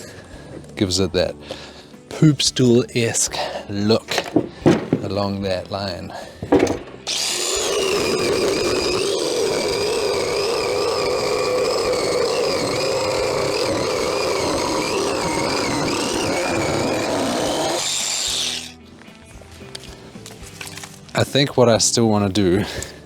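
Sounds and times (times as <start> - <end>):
electric jigsaw cutting wood: 6.6 - 18.8.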